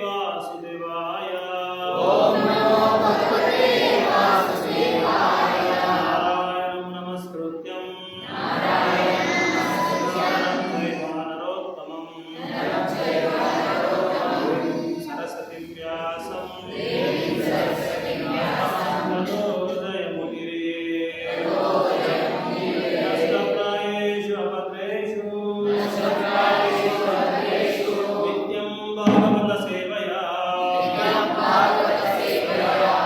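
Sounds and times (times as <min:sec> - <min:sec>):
group chanting prayers: 0:00.0 - 0:33.0
brief thump: 0:29.0 - 0:29.9.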